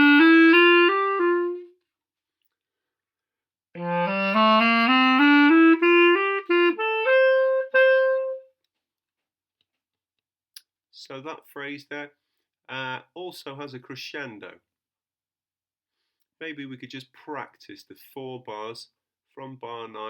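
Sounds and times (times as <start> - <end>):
clarinet playing: 0.0 - 1.8, 3.8 - 8.5.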